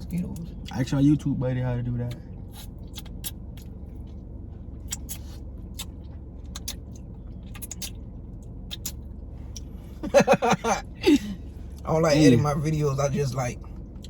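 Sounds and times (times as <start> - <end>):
steady low hum: 0.0 - 14.0
eating seafood clicks and crackles: 2.6 - 4.2, 4.9 - 9.6.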